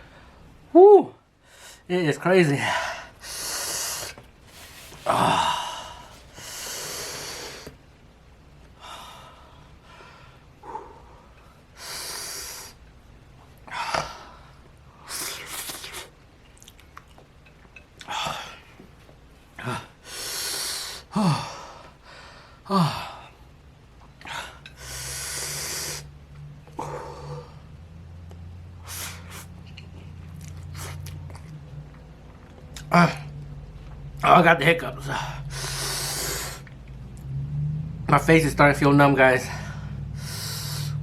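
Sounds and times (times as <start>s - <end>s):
man groaning: 0.7s - 1.1s, 5.1s - 6.0s, 32.9s - 33.3s
man breathing hard: 2.6s - 7.8s, 8.8s - 12.8s, 19.6s - 23.4s, 24.2s - 27.7s, 35.0s - 36.7s, 39.4s - 41.0s.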